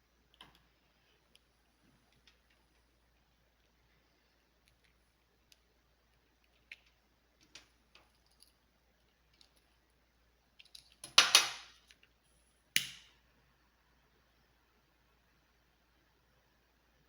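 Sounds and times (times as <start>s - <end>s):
small objects clicking on surface: 10.6s - 12.0s.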